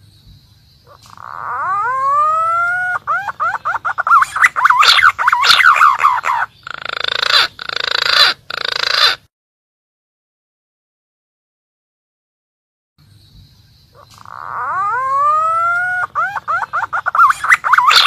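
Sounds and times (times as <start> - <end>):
pigeon calling with whistles: 1.0 - 9.2, 14.0 - 18.0
harsh rasping bird bursts: 2.9 - 9.3, 16.0 - 18.0.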